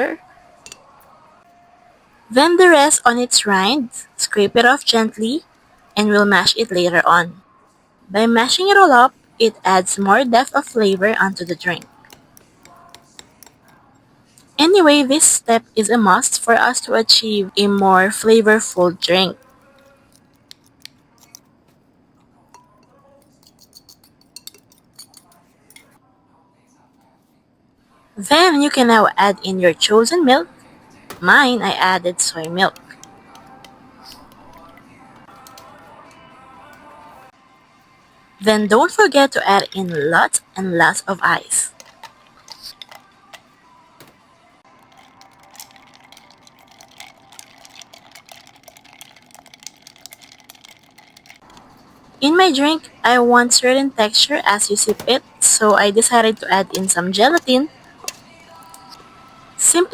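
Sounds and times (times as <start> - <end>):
utensil clinking against pitcher: 10.7 - 13.8, 44.8 - 52.2, 54.7 - 59.3
ice cubes clinking into pitcher: 44.8 - 51.4.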